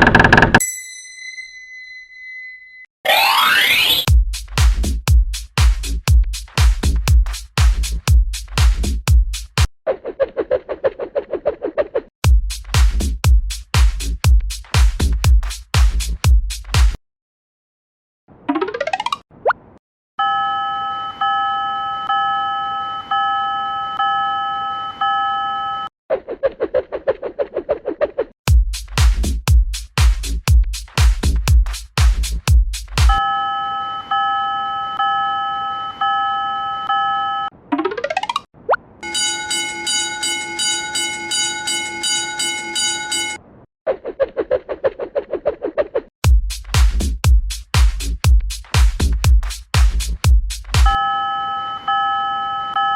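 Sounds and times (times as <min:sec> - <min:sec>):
railroad crossing bell ringing: 0:00.6 - 0:02.8, 0:39.0 - 0:43.4
loud dance music beat: 0:04.1 - 0:09.7, 0:12.3 - 0:17.0, 0:28.5 - 0:33.2, 0:46.3 - 0:51.0
railroad crossing warning bell: 0:20.2 - 0:25.8, 0:33.2 - 0:37.5, 0:39.0 - 0:43.4
lower-pitched pulsing alarm: 0:39.0 - 0:43.4.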